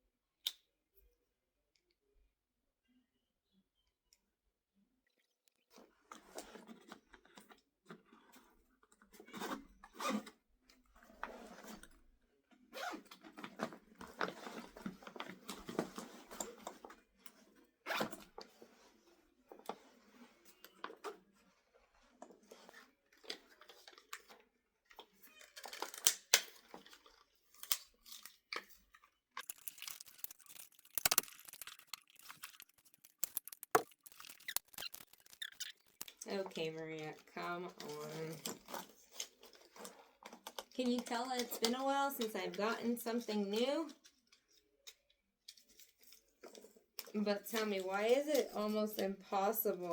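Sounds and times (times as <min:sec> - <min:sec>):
plastic and cardboard crinkling: 0:25.5 - 0:42.2
packaging snapping: 0:29.4 - 0:36.2.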